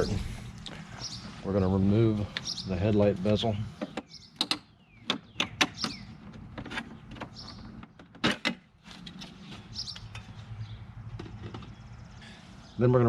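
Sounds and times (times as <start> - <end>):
parts clicking and knocking: 3.8 - 10.4, 11.0 - 12.0.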